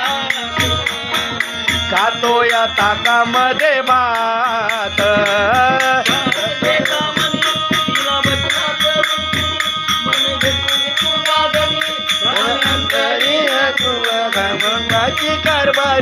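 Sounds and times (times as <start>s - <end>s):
fast drum rhythm: 4.6s - 16.0s.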